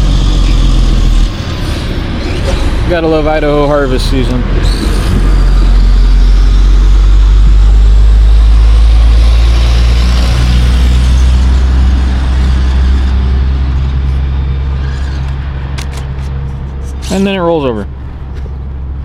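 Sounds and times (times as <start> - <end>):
heavy vehicle engine passing: 0.0 - 19.0.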